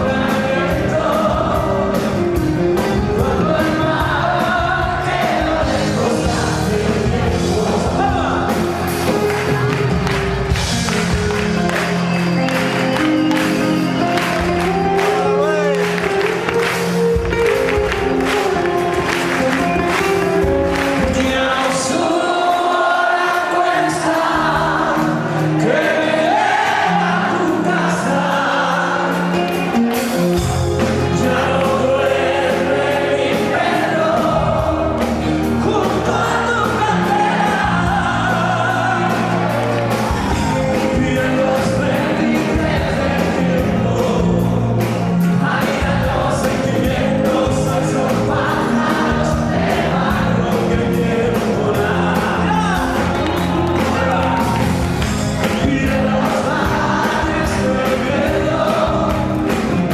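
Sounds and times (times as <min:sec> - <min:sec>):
held bass notes: 0:00.0 - 0:22.6, 0:24.2 - 0:59.9
steady drum beat: 0:00.0 - 0:22.8, 0:29.0 - 0:59.9
person singing: 0:13.0 - 0:29.8, 0:30.8 - 0:59.9.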